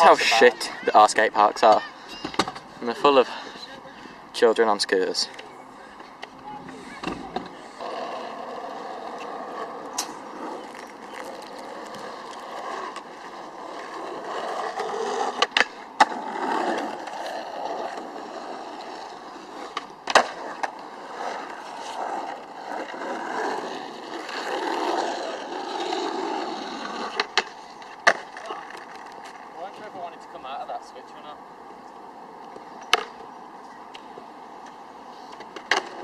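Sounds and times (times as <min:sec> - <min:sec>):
skateboard wheels rolling: 0:00.0 - 0:36.0
skateboard clacking on ground: 0:05.3 - 0:29.9, 0:32.5 - 0:33.3, 0:33.9 - 0:36.0.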